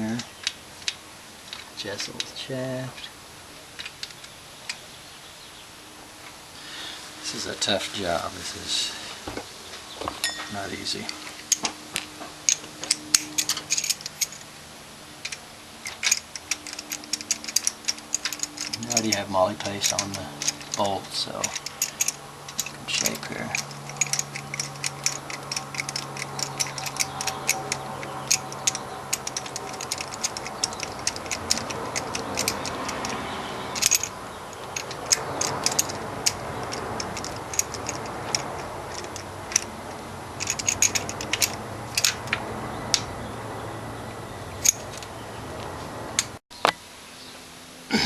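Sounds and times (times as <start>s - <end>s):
socket ratchet clicking: 12.5s - 14.5s, 15.2s - 42.4s.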